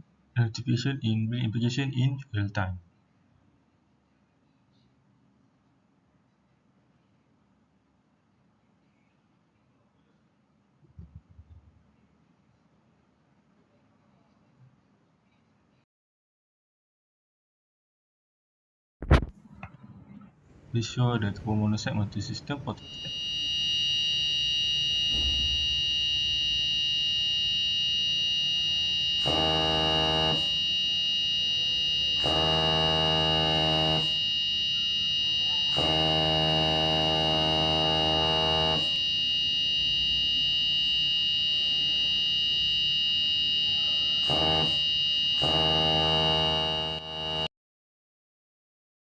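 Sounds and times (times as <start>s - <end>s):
high-pitched alarm tone: 22.8s - 47.5s
low coarse buzz: 32.0s - 34.0s, 44.3s - 47.5s.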